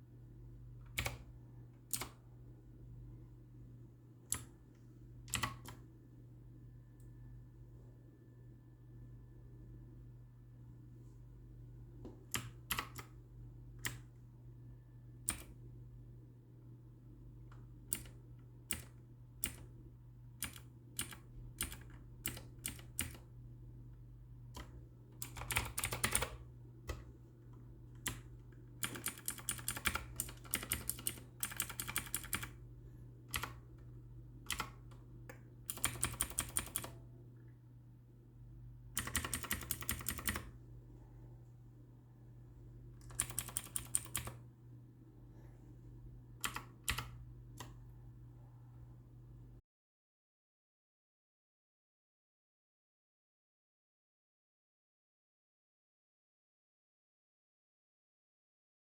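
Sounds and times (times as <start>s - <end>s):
mechanical keyboard typing: 0.9s - 1.3s, 1.9s - 2.2s, 5.3s - 5.8s, 15.3s - 15.5s, 17.9s - 19.7s, 20.4s - 23.2s, 24.6s - 27.1s, 28.0s - 32.6s, 33.3s - 33.6s, 34.5s - 34.9s, 35.7s - 37.0s, 39.0s - 40.5s, 43.0s - 44.4s, 46.4s - 47.2s.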